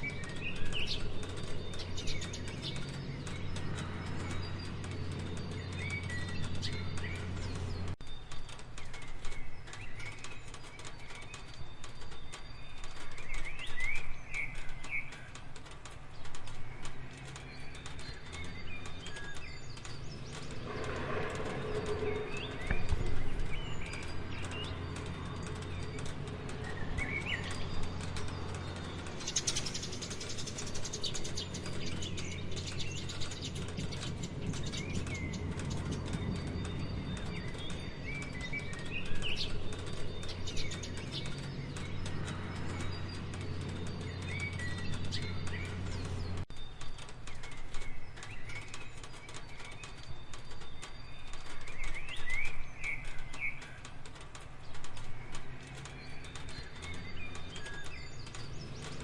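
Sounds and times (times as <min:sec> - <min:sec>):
birds chirping: 0:00.0 - 0:59.0
steady rain falling: 0:00.1 - 0:59.0.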